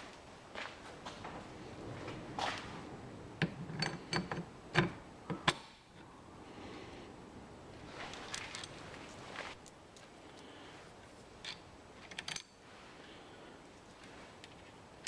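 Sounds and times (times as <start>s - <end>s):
metal parts clinking: 3.4s - 4.9s, 8.0s - 9.2s, 11.4s - 12.6s.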